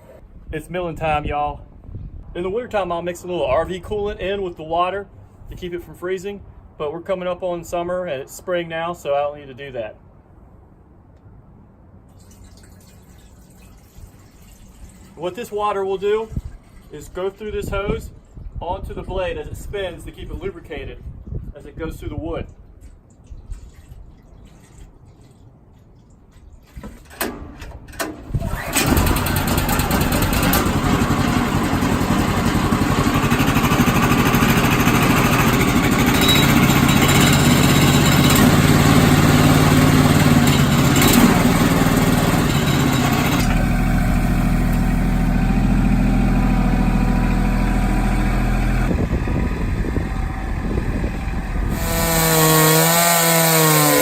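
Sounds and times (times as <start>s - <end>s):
small gasoline engine running: 28.5s - 54.0s.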